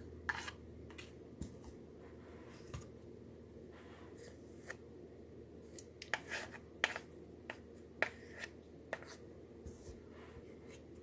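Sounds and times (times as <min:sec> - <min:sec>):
spoon scraping measuring cup: 0:00.3 - 0:01.1.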